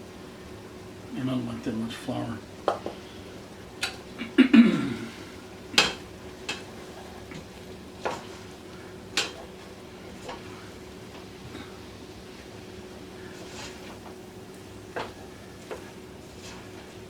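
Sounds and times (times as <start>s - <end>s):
light sizzle: 0.0s - 17.0s
utensil stirring in a pot: 5.2s - 17.0s.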